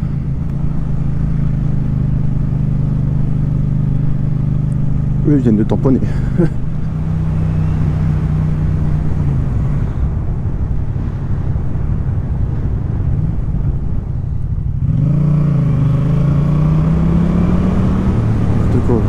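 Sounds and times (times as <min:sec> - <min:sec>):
motorcycle engine running: 0:00.0 - 0:11.2
road and wind noise: 0:00.0 - 0:19.0.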